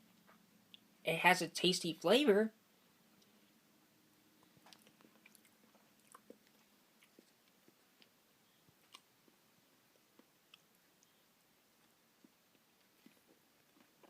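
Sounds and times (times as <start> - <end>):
chewing ice cream: 4.3 - 14.0.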